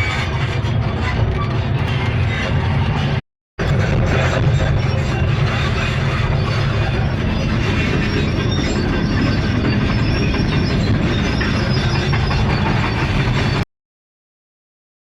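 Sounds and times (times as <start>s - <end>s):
excavator running: 0.0s - 13.6s.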